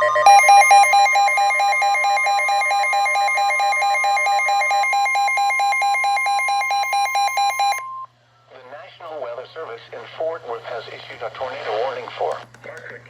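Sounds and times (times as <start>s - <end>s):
steady high alert tone: 0.0s - 7.9s.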